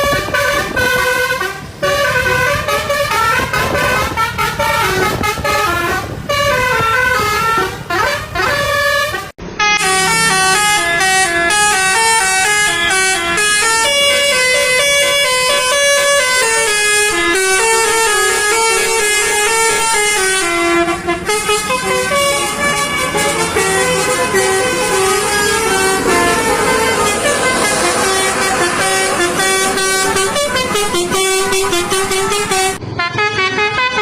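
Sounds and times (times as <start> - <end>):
low engine rumble: 0.0 - 33.0
multi-tone air horns playing tunes: 0.0 - 34.0.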